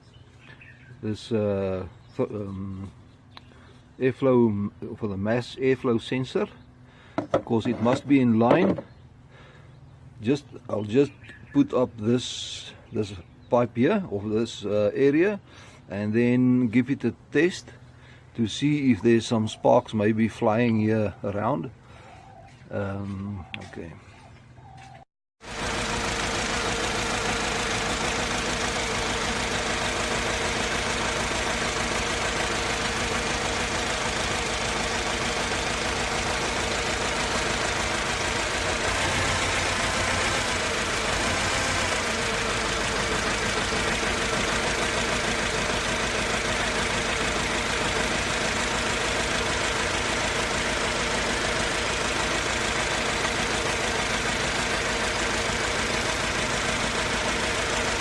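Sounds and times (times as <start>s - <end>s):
car engine idling: 25.4s - 58.0s.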